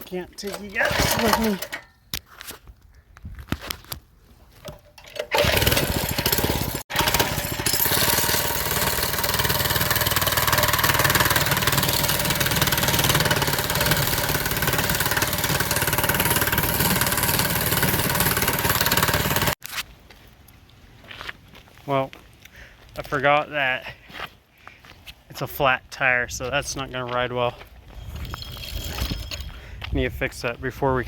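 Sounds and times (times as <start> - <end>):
small motorbike engine running: 5.2 - 19.6.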